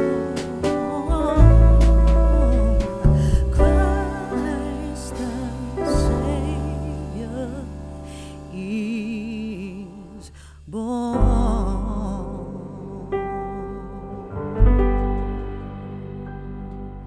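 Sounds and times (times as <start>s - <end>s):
slow melody with vibrato: 0.0s - 10.4s, 11.0s - 17.0s
sustained low notes: 0.0s - 17.0s.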